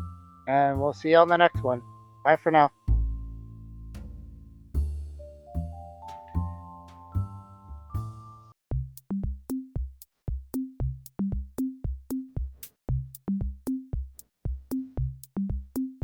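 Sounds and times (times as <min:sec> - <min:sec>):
kick drum thumps: 0:08.7 - 0:16.0
hi-hat ticks: 0:09.5 - 0:16.0.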